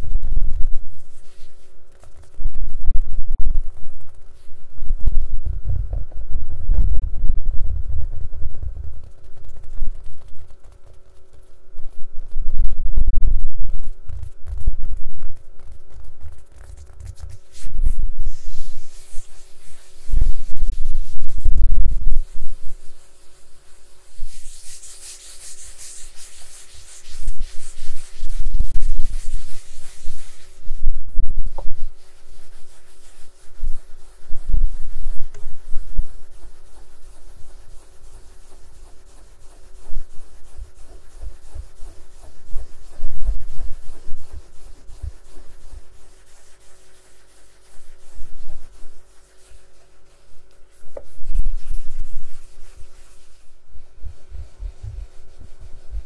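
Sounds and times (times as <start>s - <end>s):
rubbing and scratching on case: 0.4s - 6.2s, 8.2s - 56.0s
soft low handling thumps: 4.8s - 9.9s.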